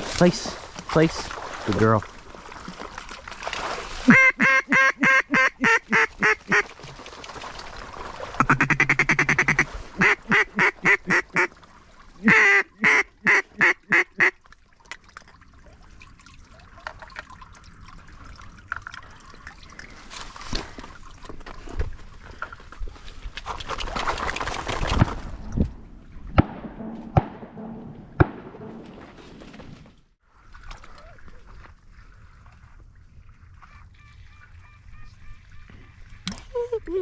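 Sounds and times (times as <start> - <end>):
duck call quacks: 4.1 - 6.7, 8.4 - 11.5, 12.2 - 14.3.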